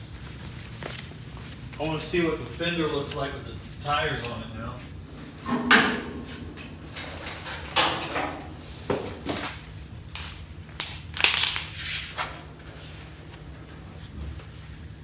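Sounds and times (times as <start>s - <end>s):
sheet metal scraping and clunking: 5.3s - 8.8s.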